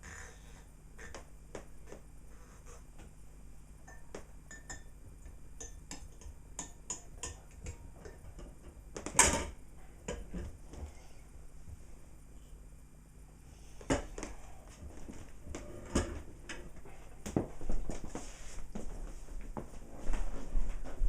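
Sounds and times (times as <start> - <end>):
glassware clatter: 3.9 - 5.0
glassware clicking and clinking: 3.9 - 8.4.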